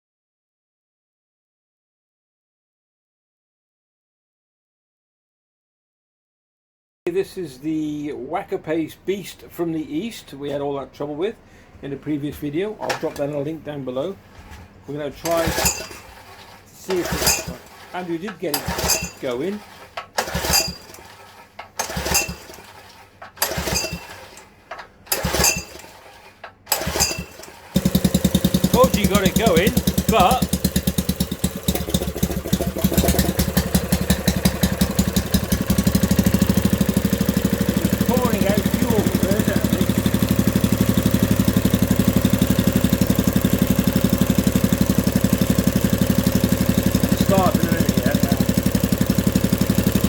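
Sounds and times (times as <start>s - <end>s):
engine recoil pull-start attempts: 15.2s - 50.0s
engine turning over with metallic rattle: 15.2s - 50.0s.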